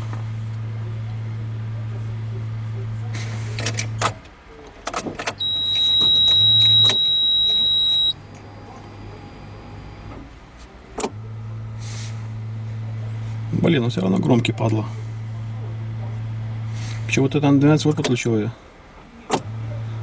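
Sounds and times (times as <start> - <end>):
electric pump humming: 0.0 - 4.2, 5.2 - 18.0, 19.2 - 20.0
high-pitched whine: 5.4 - 10.2.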